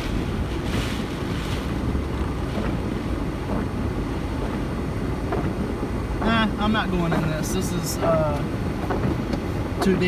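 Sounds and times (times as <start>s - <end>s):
car driving slowly: 0.0s - 10.0s.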